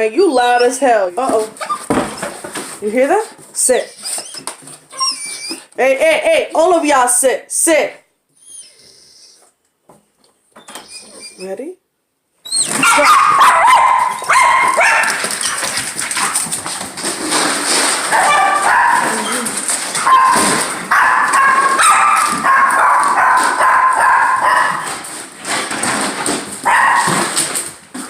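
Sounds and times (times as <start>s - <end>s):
dogs barking and whining: 0.2s - 2.5s, 3.8s - 5.8s, 10.5s - 11.5s, 12.4s - 16.8s, 17.9s - 27.5s.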